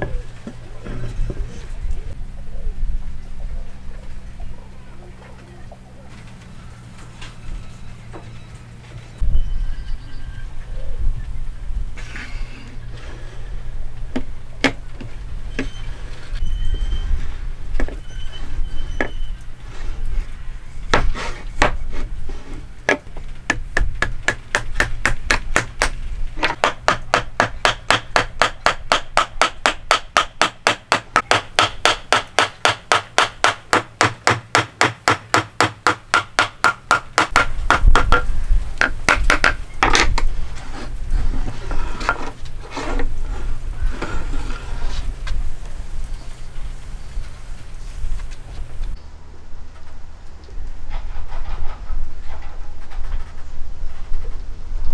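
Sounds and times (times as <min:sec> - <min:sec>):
hammer striking wood: 0:22.9 - 0:40.0.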